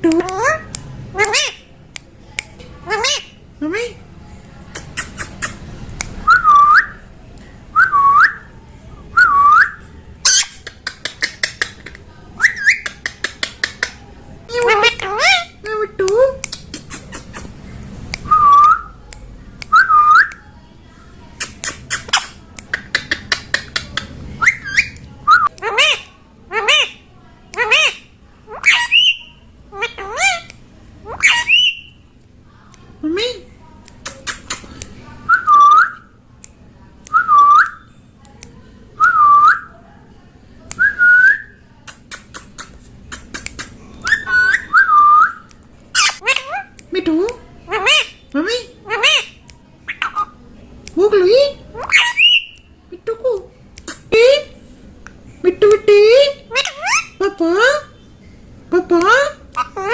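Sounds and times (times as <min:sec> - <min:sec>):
parrot clicks and chirps: 0:00.0 - 0:03.3, 0:04.7 - 0:07.0, 0:09.2 - 0:20.5, 0:21.4 - 0:32.0, 0:33.8 - 0:39.7, 0:41.9 - 0:51.0, 0:51.7 - 0:52.7
parrot whistling: 0:06.2 - 0:07.0, 0:12.4 - 0:12.9, 0:24.4 - 0:26.0, 0:44.0 - 0:46.7, 0:51.8 - 0:52.6.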